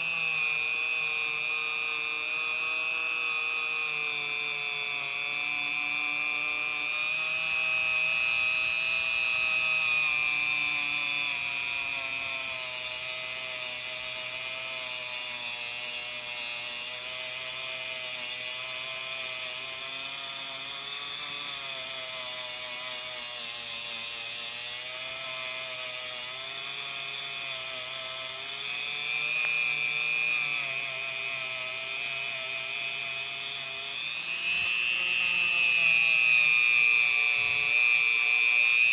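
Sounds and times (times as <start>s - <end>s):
rotary tool wire brush on metal: 21.8s - 38.9s.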